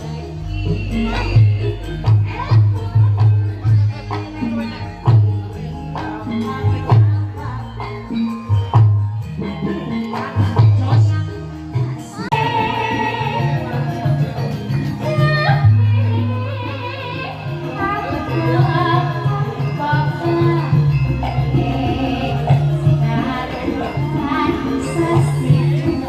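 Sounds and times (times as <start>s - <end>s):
person singing: 0.0s - 8.4s, 9.3s - 26.0s
live band playing: 0.0s - 26.0s.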